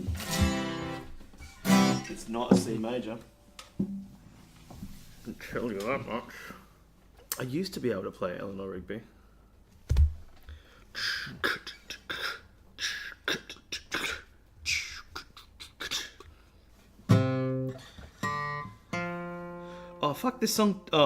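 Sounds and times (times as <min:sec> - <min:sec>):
scratchy guitar string sounds: 0:00.0 - 0:02.8
strummed guitar chords: 0:00.0 - 0:02.8, 0:17.1 - 0:20.1
guitar thump: 0:00.0 - 0:03.1, 0:03.7 - 0:05.0.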